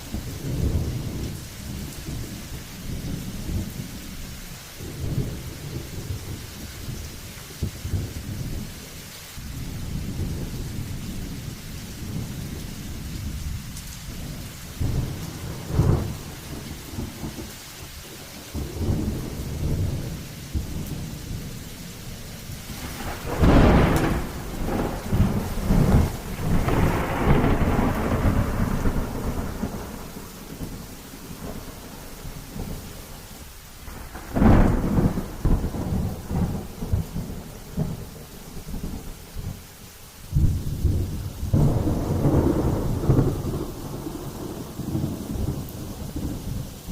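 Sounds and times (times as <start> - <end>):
heavy low thunder rumbles: 0.0 - 39.6, 40.3 - 46.9
steady rain: 0.0 - 46.9.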